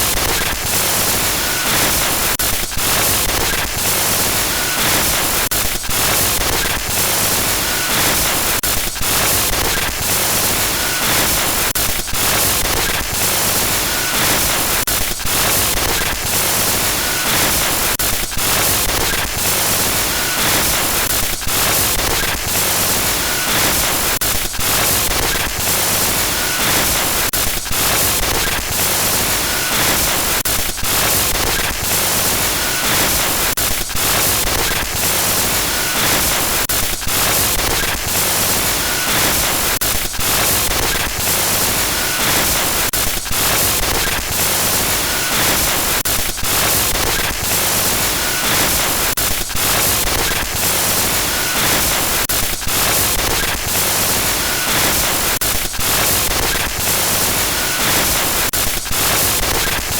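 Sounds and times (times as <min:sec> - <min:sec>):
harsh stuttering static hiss: 0:00.0 - 0:59.9.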